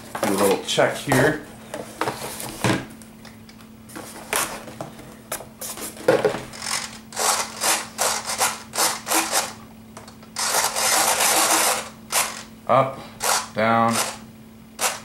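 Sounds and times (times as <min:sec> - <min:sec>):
servos buzzing: 0:06.5 - 0:12.6, 0:13.2 - 0:15.0.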